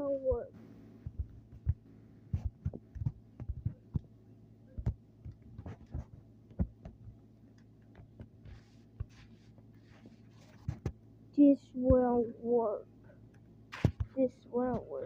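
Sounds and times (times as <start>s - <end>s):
steady low hum: 0.0s - 15.0s
soft low thumps: 0.2s - 7.2s, 11.7s - 12.3s.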